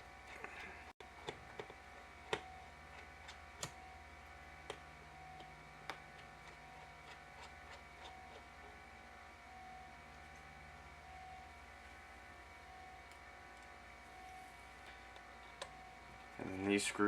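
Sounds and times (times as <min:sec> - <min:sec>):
faint steady hum: 0:00.0 - 0:17.0
screwdriver clicks and taps: 0:01.2 - 0:03.8.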